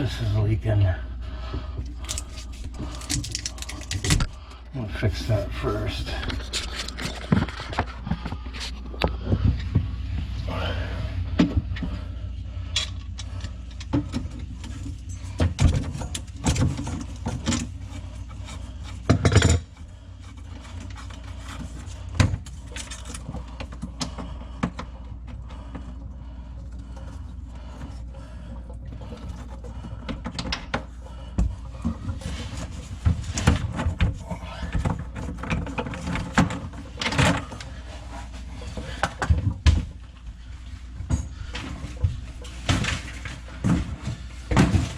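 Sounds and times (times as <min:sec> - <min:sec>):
steady low hum: 0:00.0 - 0:44.9
tools knocking on pipes: 0:19.1 - 0:19.7.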